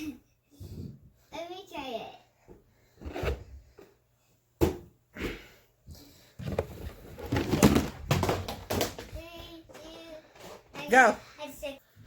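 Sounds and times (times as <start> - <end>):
balloon taps and rustling: 6.4 - 11.0.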